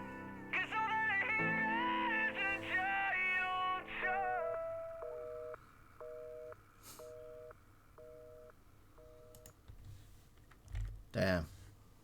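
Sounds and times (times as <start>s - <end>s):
telephone busy signal: 5.0s - 9.5s.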